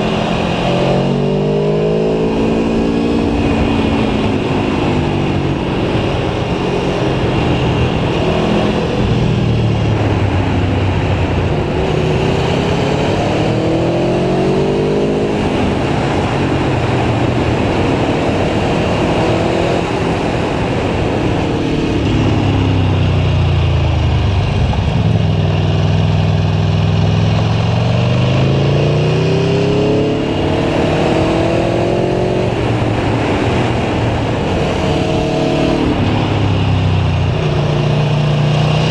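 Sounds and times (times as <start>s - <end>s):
motorcycle engine revving: 0.0s - 38.9s
steady rushing noise: 0.0s - 38.9s.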